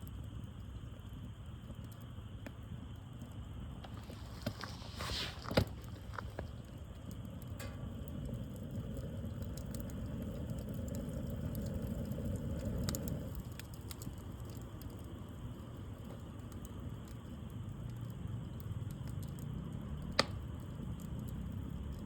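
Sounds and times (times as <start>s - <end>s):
low rumble of flames: 0.0s - 22.0s
wood fire crackling and popping: 0.0s - 22.0s
sharp wood crack: 20.2s - 20.4s.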